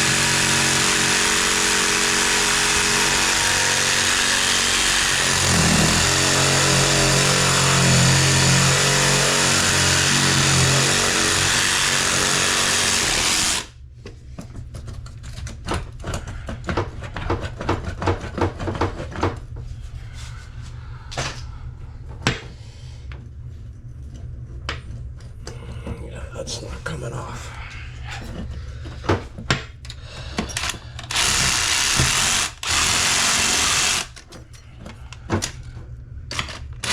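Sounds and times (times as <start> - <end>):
power saw cutting metal: 0.0 - 13.7, 30.7 - 34.3.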